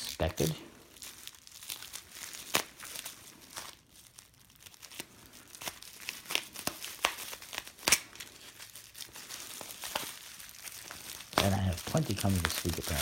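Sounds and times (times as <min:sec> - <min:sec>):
packaging crinkling and tearing: 0:00.0 - 0:13.0
sharp snaps of packaging: 0:05.6 - 0:08.2.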